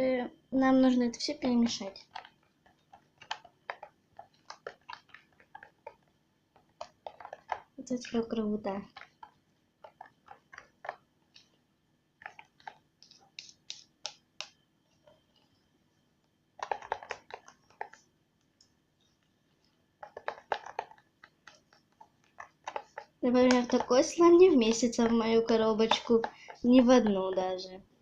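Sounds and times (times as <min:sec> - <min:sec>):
slime stirred squelching: 0:00.6 - 0:28.0.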